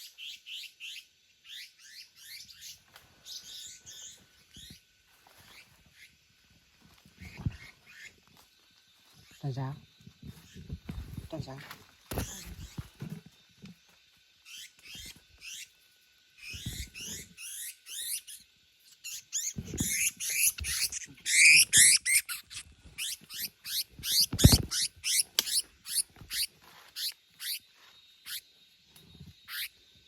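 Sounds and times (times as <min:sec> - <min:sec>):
bird distress squeaks: 0:16.4 - 0:28.5, 0:29.5 - 0:29.8.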